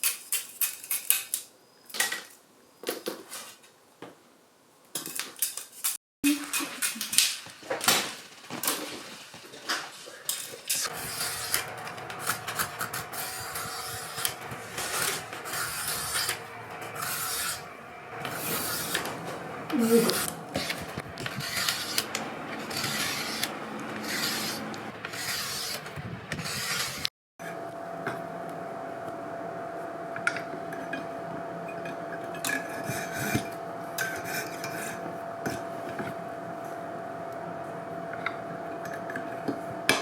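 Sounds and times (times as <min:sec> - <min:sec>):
blade scraping bamboo: 0:10.7 - 0:27.1, 0:32.4 - 0:36.0.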